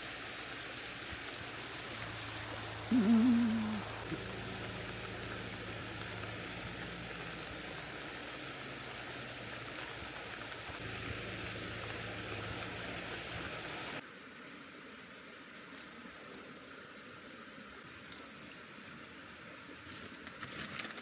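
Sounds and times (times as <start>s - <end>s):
steady rain: 0.0s - 14.4s.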